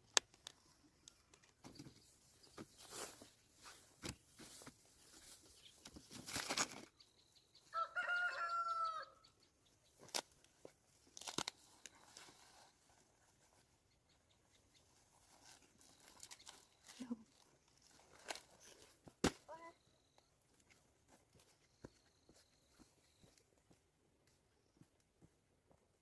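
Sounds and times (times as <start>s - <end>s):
clicks and rustles: 4.0s - 6.9s
rooster crowing: 7.7s - 9.2s.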